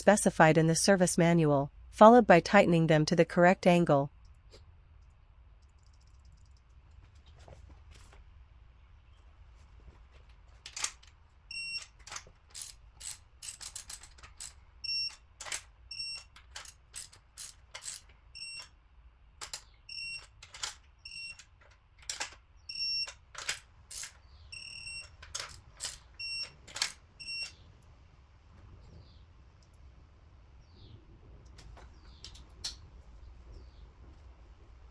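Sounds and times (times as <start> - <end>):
torque wrench ratcheting clicks: 11.8 - 14.6.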